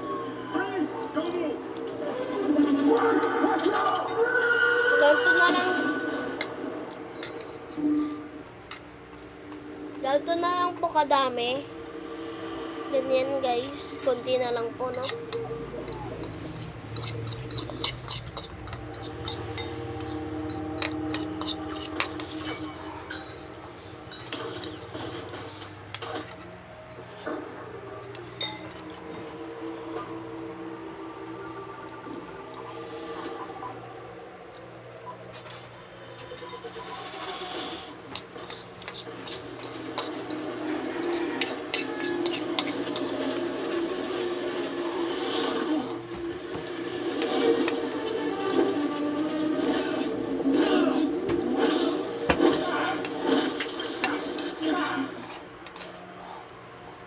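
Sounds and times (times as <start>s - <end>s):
low background hum: 0.0s - 57.0s
cutlery clinking on plates: 14.9s - 23.5s.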